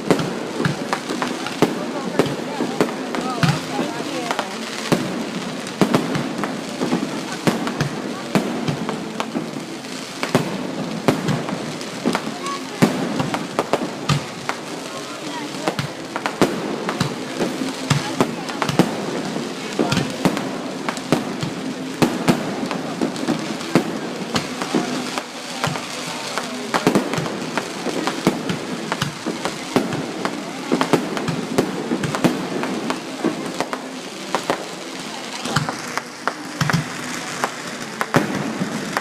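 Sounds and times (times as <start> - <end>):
fireworks bangs and crackling: 0.0 - 39.0.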